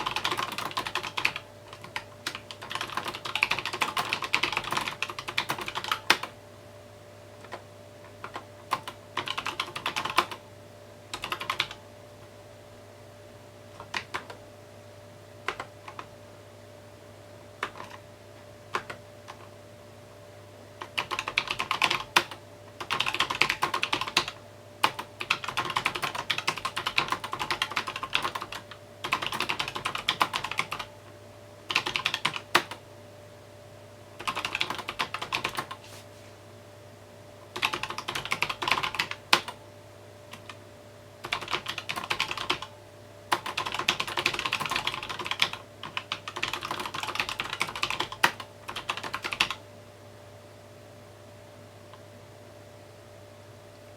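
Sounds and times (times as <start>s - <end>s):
typing on mechanical keyboard: 0.0s - 6.3s, 8.2s - 10.4s, 11.1s - 11.8s, 13.8s - 14.4s, 15.5s - 16.1s, 17.6s - 18.0s, 18.7s - 19.5s, 20.8s - 30.9s, 31.7s - 32.8s, 34.2s - 35.8s, 37.6s - 39.6s, 41.2s - 42.7s, 43.3s - 49.6s.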